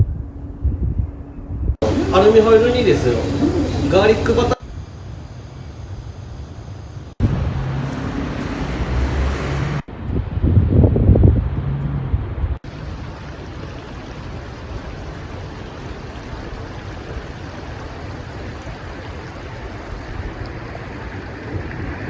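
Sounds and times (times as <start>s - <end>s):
river babbling over its bed: 1.8s - 4.6s, 12.6s - 22.0s
loud low rumble: 7.1s - 12.7s.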